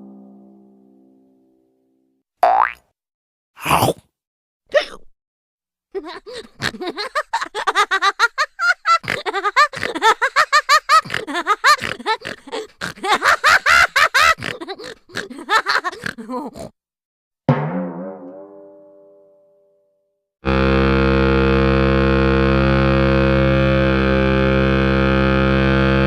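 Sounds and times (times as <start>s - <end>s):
twanging note: 0.0s - 2.0s, 17.5s - 19.8s.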